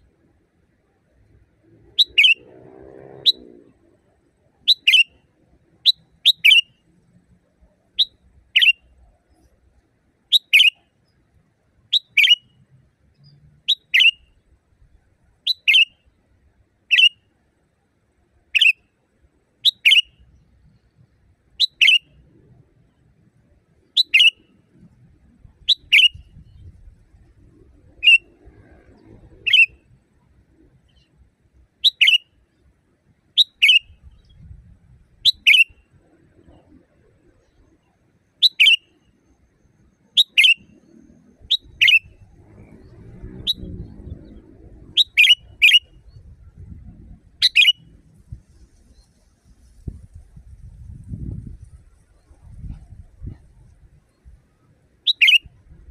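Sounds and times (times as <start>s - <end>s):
bird two-note calls: 47.4s - 47.8s.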